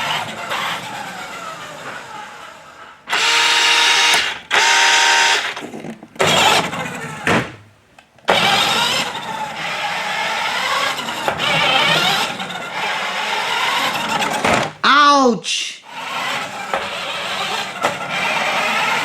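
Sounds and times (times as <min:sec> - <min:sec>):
toy car whirring: 0:00.0 - 0:07.3, 0:08.2 - 0:14.7, 0:15.9 - 0:19.0
toy car buzzy tone: 0:03.1 - 0:05.6, 0:08.4 - 0:14.5.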